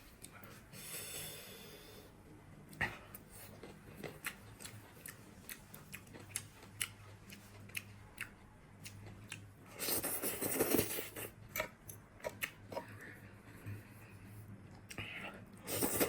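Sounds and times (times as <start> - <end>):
faint steady hum: 0.0 - 16.0
person chewing: 2.7 - 13.9, 14.7 - 16.0.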